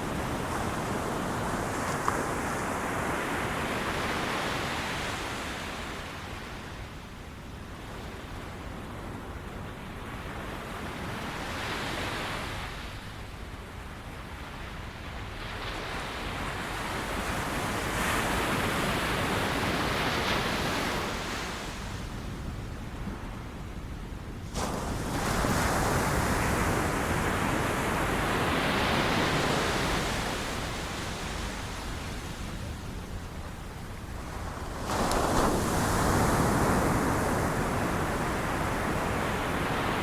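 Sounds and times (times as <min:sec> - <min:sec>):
ocean waves breaking on beach: 0:00.0 - 0:06.8, 0:24.4 - 0:40.0.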